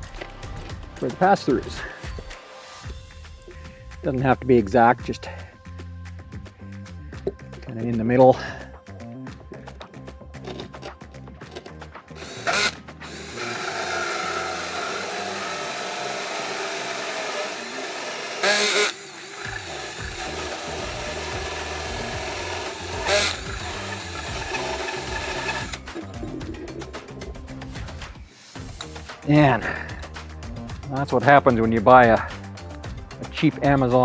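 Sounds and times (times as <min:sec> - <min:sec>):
drill with hole saw cutting: 0:12.2 - 0:26.1.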